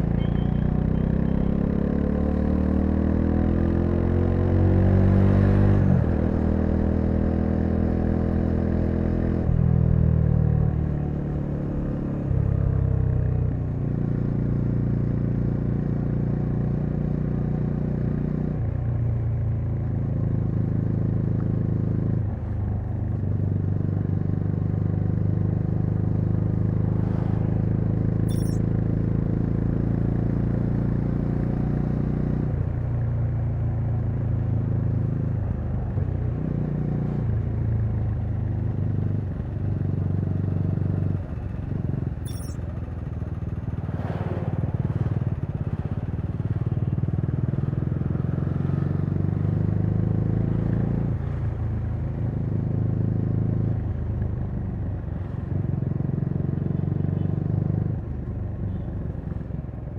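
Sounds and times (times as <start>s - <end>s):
motorcycle engine running: 22.5s - 36.9s, 38.1s - 59.7s.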